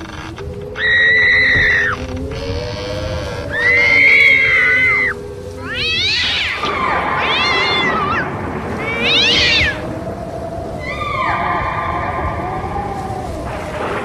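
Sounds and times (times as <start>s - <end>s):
cat meowing: 3.3s - 9.9s.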